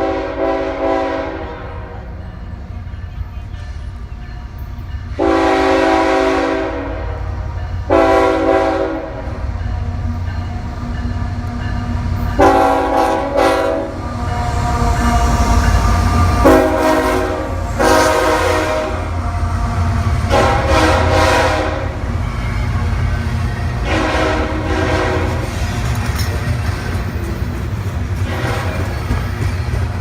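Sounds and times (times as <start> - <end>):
train horn blasts: 0.0 - 2.2, 5.2 - 9.4, 12.4 - 23.0, 23.6 - 25.6, 28.2 - 29.2
passing train rumble: 0.0 - 30.0.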